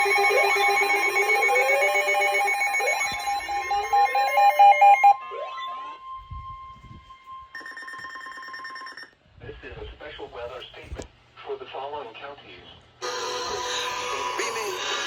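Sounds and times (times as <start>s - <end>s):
rising sweeping tones: 0.0s - 7.4s
electronic beeping: 0.0s - 9.1s
steady warning tone: 0.0s - 9.1s.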